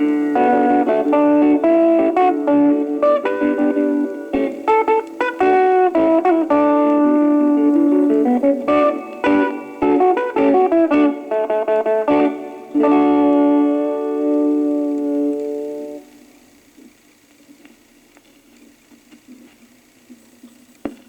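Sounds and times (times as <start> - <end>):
instrumental accompaniment: 0.0 - 16.4
electric guitar melody: 0.0 - 18.2.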